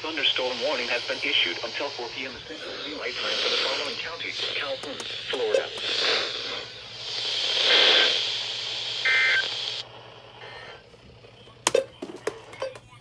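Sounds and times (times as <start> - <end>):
radio static hiss: 0.0 - 13.0
two-tone data buzzes: 2.7 - 6.6, 8.8 - 10.9
clicks: 3.4 - 6.1, 11.0 - 13.0.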